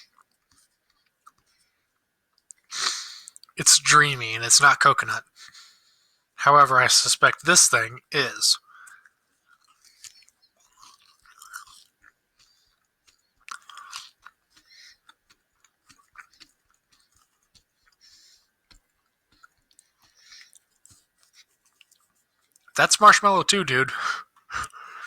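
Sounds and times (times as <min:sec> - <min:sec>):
person chewing candy: 0:00.0 - 0:03.6, 0:08.6 - 0:22.8, 0:24.2 - 0:25.0.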